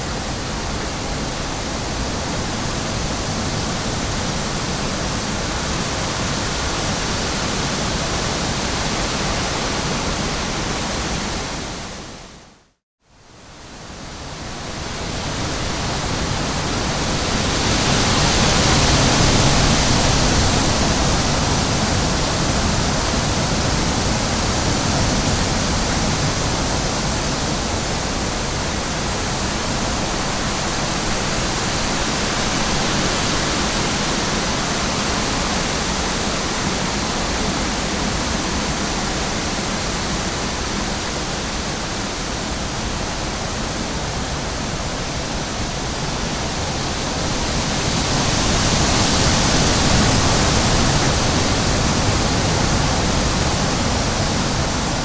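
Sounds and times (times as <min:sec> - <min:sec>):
rushing water: 0:00.0 - 0:12.4, 0:13.4 - 0:55.0.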